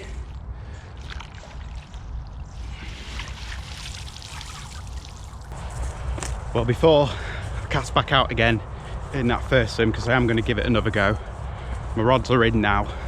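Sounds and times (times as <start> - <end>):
water trickling and splashing: 0.7 - 5.6
steady low rumble: 4.8 - 13.0.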